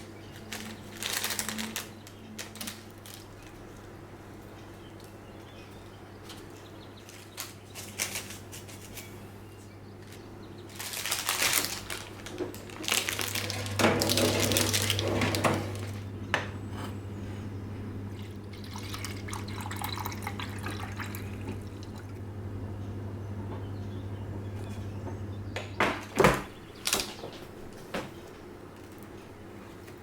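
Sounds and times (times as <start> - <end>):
low steady hum: 0.0 - 26.8
water running from tap into sink: 18.2 - 22.2.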